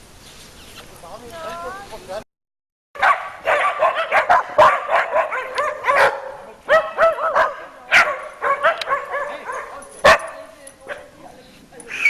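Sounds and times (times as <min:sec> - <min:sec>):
dogs barking and yipping: 0:03.0 - 0:11.2.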